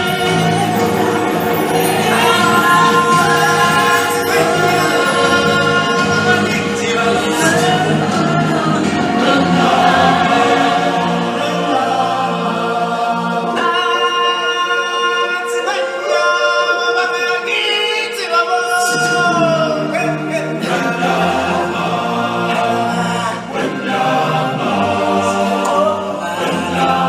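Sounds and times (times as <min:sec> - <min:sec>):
low musical backing: 0:00.0 - 0:16.1
choir singing in harmony: 0:00.0 - 0:27.0.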